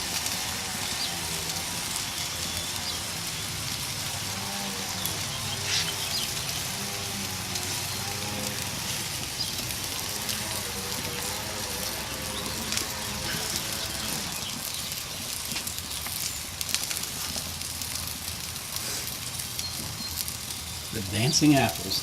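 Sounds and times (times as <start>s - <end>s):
wavering hum: 0.0s - 15.1s
apple slices sizzling on grill: 0.0s - 22.0s.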